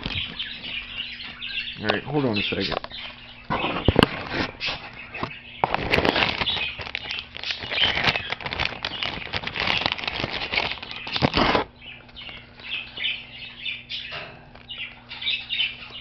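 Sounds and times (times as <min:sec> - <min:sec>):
plastic packaging crinkling: 0:00.0 - 0:00.8, 0:05.6 - 0:11.7.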